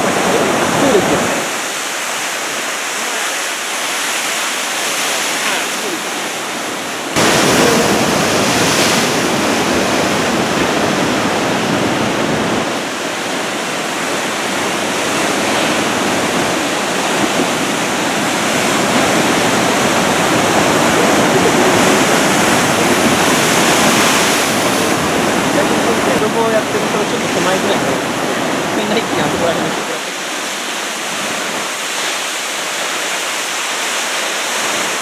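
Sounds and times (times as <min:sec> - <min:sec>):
heavy surf breaking: 0:00.0 - 0:35.0.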